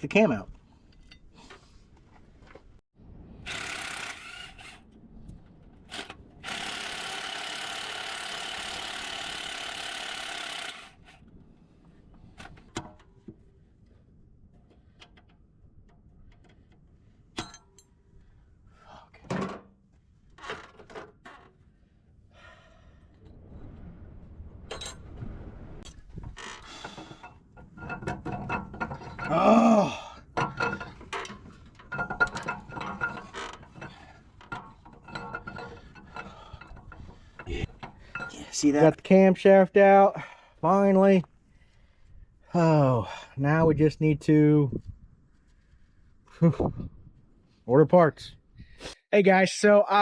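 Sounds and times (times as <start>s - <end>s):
power tool running: 6.4s - 11.0s
metal engine parts clinking: 27.0s - 29.6s, 30.2s - 38.6s.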